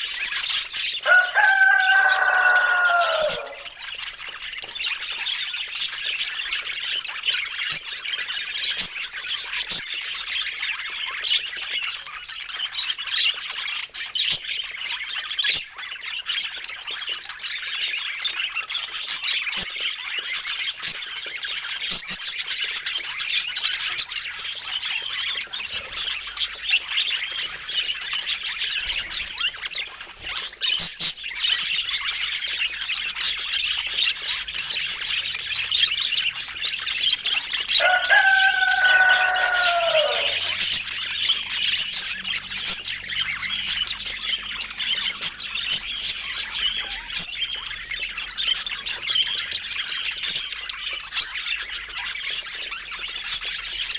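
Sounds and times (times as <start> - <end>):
budgerigars chattering: 0.0 - 53.9
drawn-out falling bird call: 1.0 - 3.8, 37.2 - 47.4.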